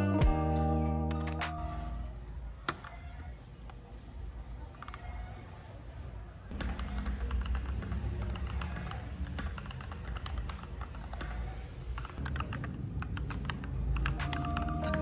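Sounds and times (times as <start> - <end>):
mechanical keyboard typing: 6.6 - 11.4, 12.0 - 15.0.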